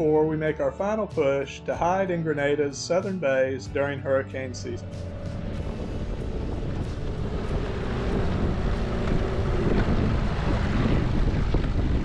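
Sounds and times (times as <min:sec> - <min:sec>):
outboard motor running: 0:04.2 - 0:12.0
wind noise on microphone: 0:04.8 - 0:12.0.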